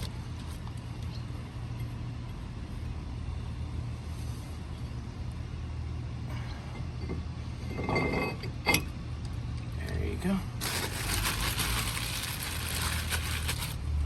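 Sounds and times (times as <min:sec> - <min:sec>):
low background hum: 0:00.0 - 0:14.0
rustling and handling noise: 0:10.6 - 0:13.9.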